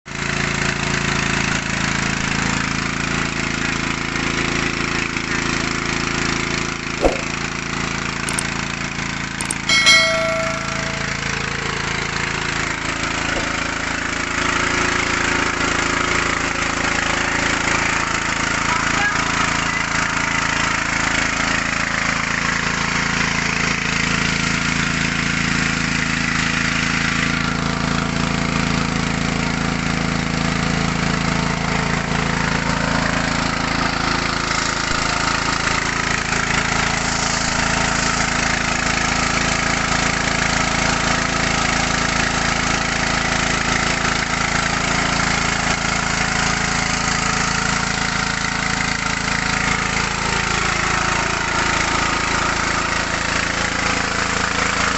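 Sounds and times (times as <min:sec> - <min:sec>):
small petrol engine running: 0:00.1 - 0:54.9.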